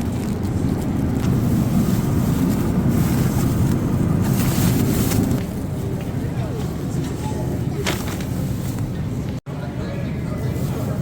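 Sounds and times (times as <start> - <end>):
car road and wind noise: 0.0 - 9.4.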